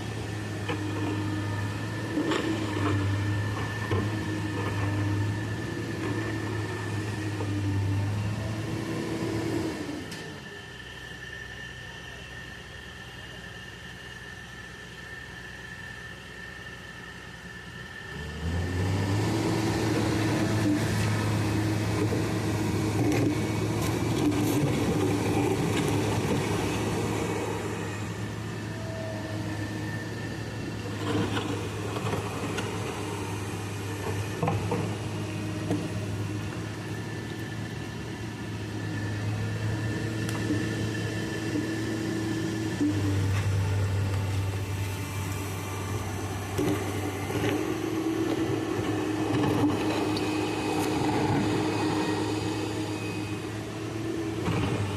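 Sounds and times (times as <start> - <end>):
excavator diesel engine revving: 0.0 - 54.9.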